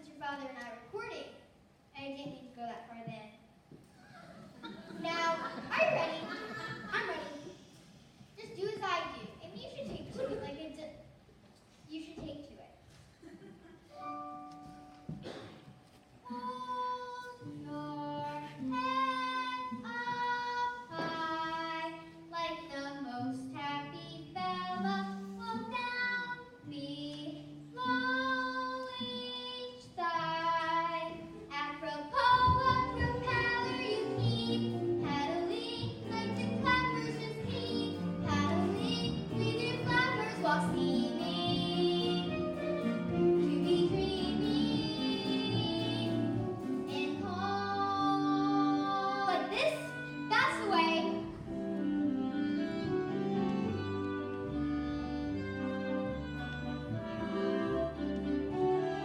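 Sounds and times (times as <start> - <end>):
musical accompaniment: 13.8 - 59.0
children singing: 32.2 - 49.6.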